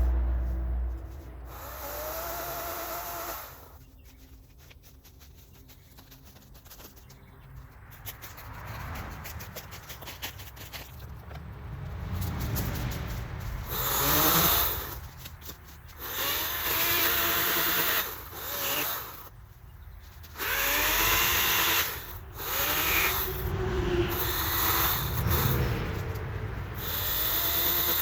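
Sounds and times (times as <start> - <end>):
small gas engine revving: 0.9 - 3.8, 11.7 - 19.3, 20.2 - 28.0.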